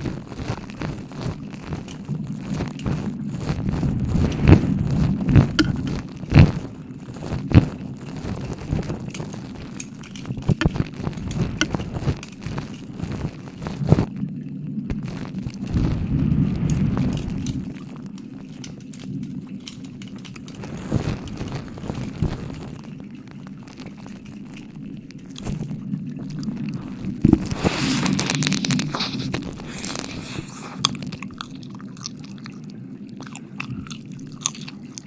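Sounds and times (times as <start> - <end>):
wet clicks and pops: 0.3 - 14.2, 16.6 - 35.0
wet mouth licking sounds: 27.3 - 32.6.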